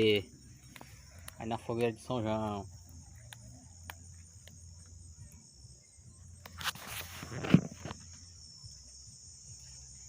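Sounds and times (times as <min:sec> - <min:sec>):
bonfire crackling: 0:00.0 - 0:10.0
crickets chirring: 0:00.0 - 0:10.0
rustle and thump: 0:06.6 - 0:08.2.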